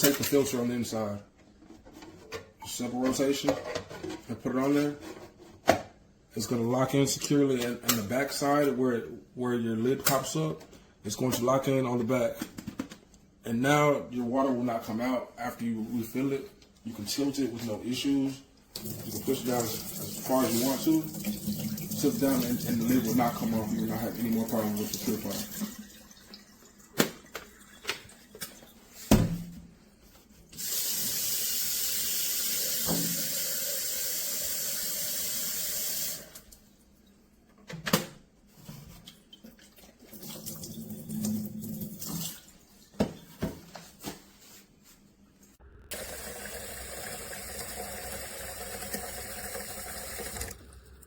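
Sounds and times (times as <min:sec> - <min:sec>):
tap water running into pitcher: 0:18.7 - 0:28.6, 0:30.6 - 0:36.6, 0:39.0 - 0:42.5, 0:45.9 - 0:51.0.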